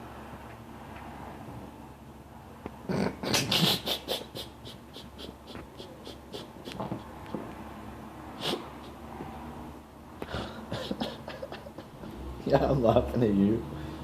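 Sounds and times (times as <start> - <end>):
person wheezing laughter: 2.9 - 7.2, 8.4 - 9.0, 10.2 - 12.2.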